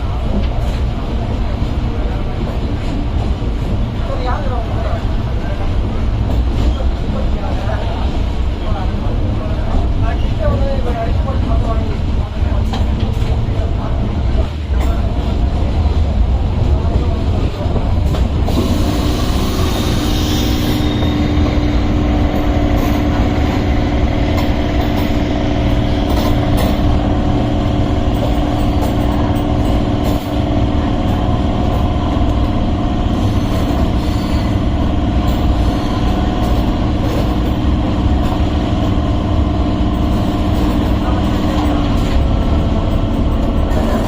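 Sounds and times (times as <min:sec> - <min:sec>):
electric train rumbling: 0:00.0 - 0:44.0.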